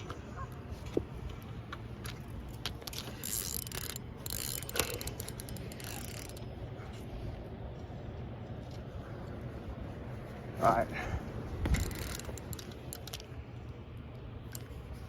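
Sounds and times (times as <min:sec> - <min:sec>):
fishing reel clicking: 0:02.0 - 0:06.5, 0:11.7 - 0:13.3.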